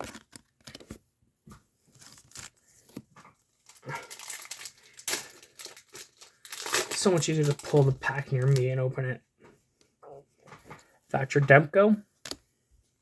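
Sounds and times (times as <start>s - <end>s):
foil wrapper crinkling and tearing: 1.9s - 8.8s.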